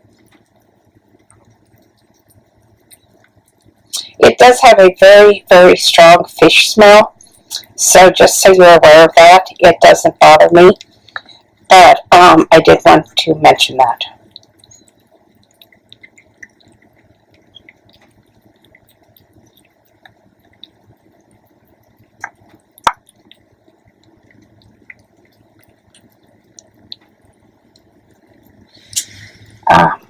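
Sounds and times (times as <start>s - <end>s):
cat eating wet smacking: 0.0s - 4.2s, 14.2s - 29.6s.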